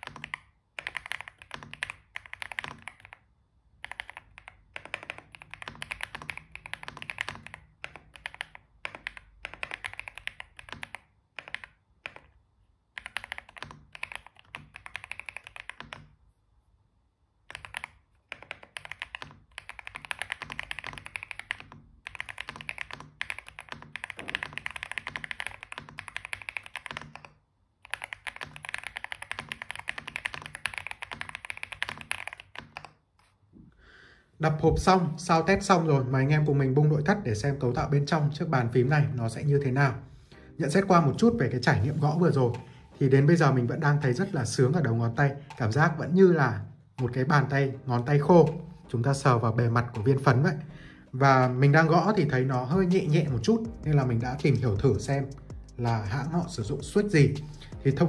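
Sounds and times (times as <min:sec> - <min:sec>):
mechanical keyboard typing: 0:00.0 - 0:16.2, 0:17.4 - 0:33.0, 0:51.4 - 0:58.0.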